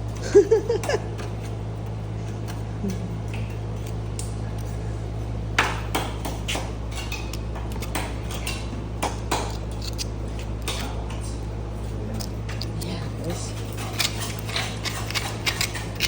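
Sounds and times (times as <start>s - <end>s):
steady low hum: 0.0s - 16.0s
scraper scraping metal: 12.8s - 16.0s.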